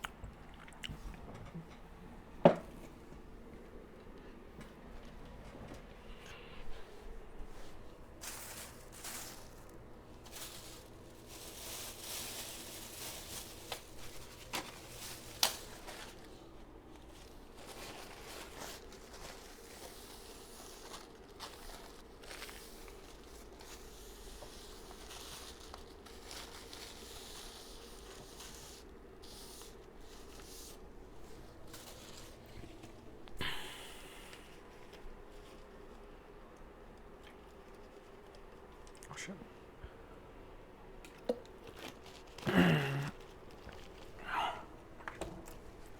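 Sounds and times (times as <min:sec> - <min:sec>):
wet chewing: 0:00.0 - 0:01.3
rustling: 0:06.1 - 0:33.4, 0:41.7 - 0:42.5, 0:43.1 - 0:45.9.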